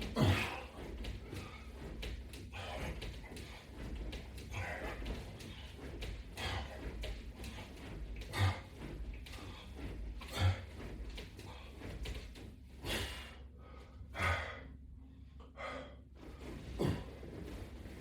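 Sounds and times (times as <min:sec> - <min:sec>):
man breathing hard: 0:12.8 - 0:17.4.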